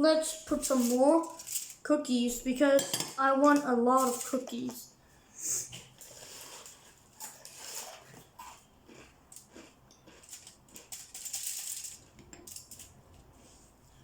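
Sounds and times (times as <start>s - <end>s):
soft scrapes of cookie dough: 5.4s - 9.1s, 13.2s - 14.0s.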